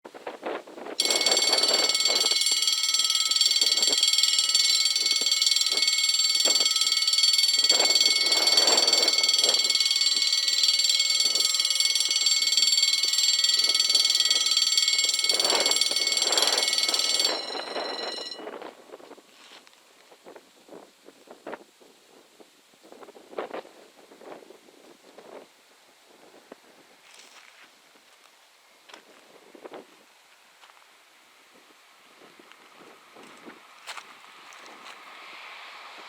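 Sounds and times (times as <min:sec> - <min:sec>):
level-crossing warning bells ringing: 0:01.0 - 0:18.7.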